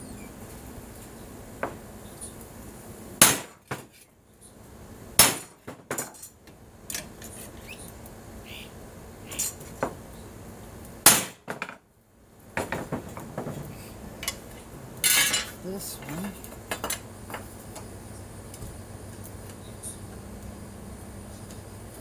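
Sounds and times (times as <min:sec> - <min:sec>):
light metal knocks and clinks: 0:12.6 - 0:17.5.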